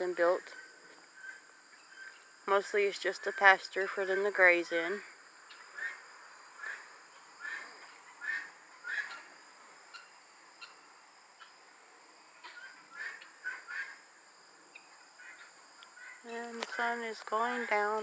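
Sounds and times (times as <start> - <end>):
insects droning: 0.0 - 18.0
short bird calls: 6.6 - 9.3, 12.4 - 14.0.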